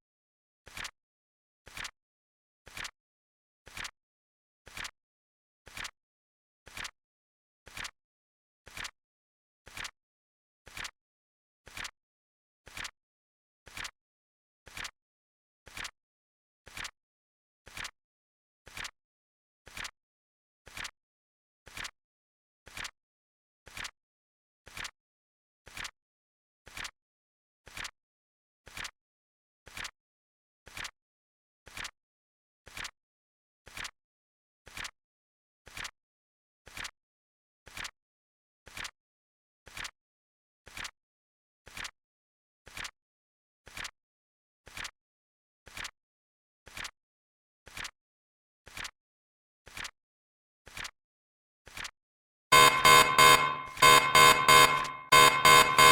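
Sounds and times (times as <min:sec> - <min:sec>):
timer alarm beeps: 0:52.5 - 0:55.9
timer ticking: 0:52.5 - 0:55.9.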